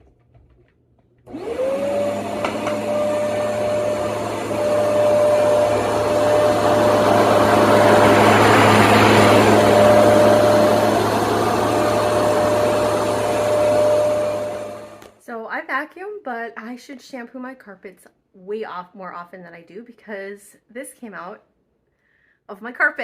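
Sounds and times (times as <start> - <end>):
carpet shampooer motor running: 1.2 - 15.2.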